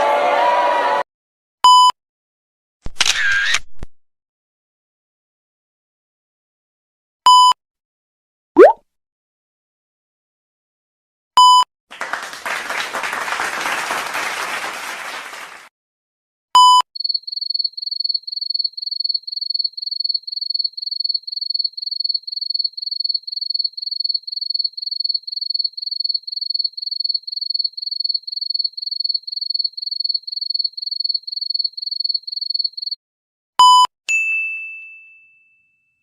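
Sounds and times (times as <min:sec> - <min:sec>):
cricket chirping: 0:17.0 - 0:33.0
ringing ding: 0:34.1 - 0:35.9.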